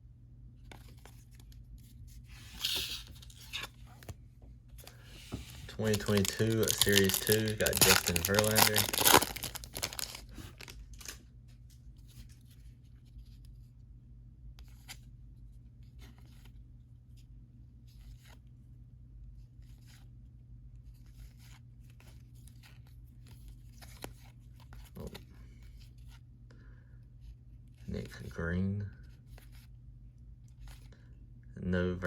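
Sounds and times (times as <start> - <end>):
steady low hum: 0.0 - 32.0
cards sliding and flicking: 2.4 - 4.1
wrappers tearing and rustling: 5.7 - 11.2.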